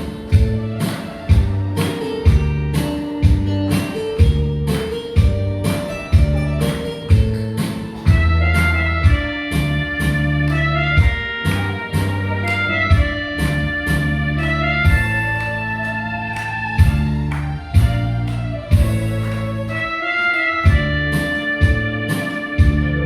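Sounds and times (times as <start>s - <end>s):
instrumental music with bass: 0.0s - 23.0s.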